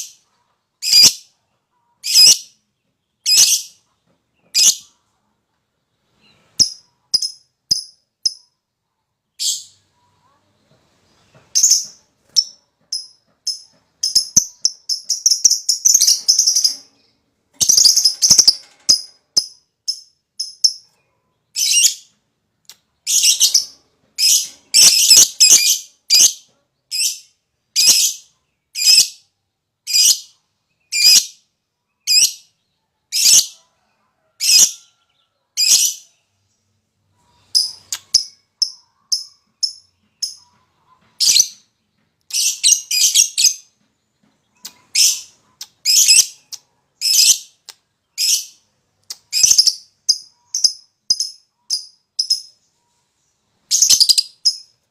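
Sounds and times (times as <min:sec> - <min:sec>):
lovebird chirping and calling: 0:00.8 - 0:01.3, 0:02.0 - 0:02.6, 0:03.2 - 0:03.8, 0:06.2 - 0:08.5, 0:09.4 - 0:09.8, 0:11.5 - 0:22.2, 0:23.0 - 0:29.2, 0:29.9 - 0:31.4, 0:32.0 - 0:32.5, 0:34.4 - 0:34.8, 0:35.6 - 0:36.2, 0:37.2 - 0:41.7, 0:42.3 - 0:43.7, 0:44.6 - 0:52.6, 0:53.6 - 0:54.7.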